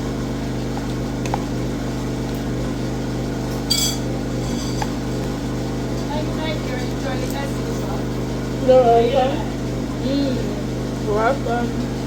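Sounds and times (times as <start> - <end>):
low mechanical hum: 0.0 - 12.0
cutlery clinking on a dish: 3.5 - 5.0.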